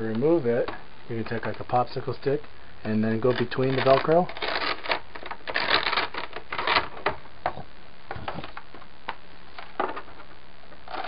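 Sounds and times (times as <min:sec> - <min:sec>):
velcro tearing apart: 0:03.3 - 0:06.9.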